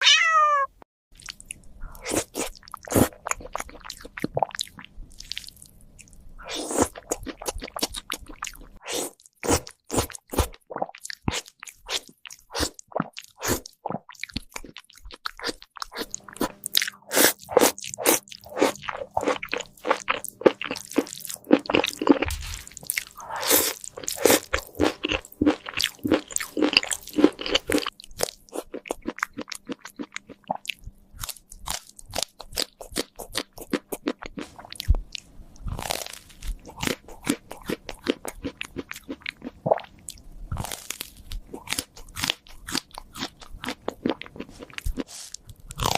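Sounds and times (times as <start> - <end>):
cat chewing crunchy food: 14.3 - 35.0, 35.6 - 45.9.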